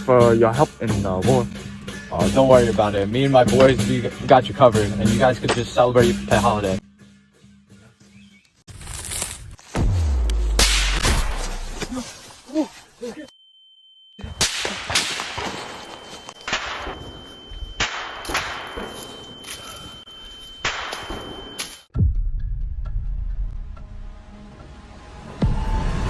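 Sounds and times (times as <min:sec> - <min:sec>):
sharp bangs: 0:09.7 - 0:11.8, 0:14.2 - 0:19.7, 0:20.6 - 0:21.9
high-pitched ringing tone: 0:12.6 - 0:14.4, 0:15.4 - 0:21.9
deep boom: 0:21.9 - 0:23.8.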